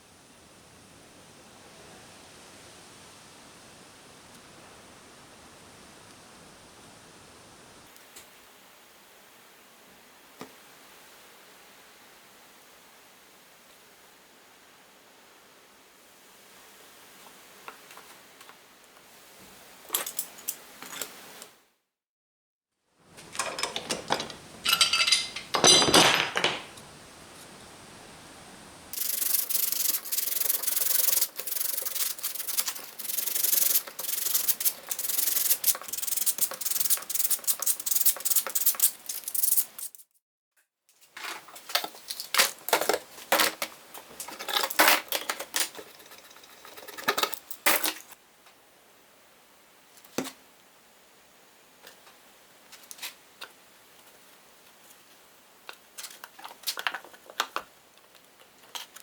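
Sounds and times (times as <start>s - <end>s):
sandpaper rubbing wood: 29.0s - 40.0s.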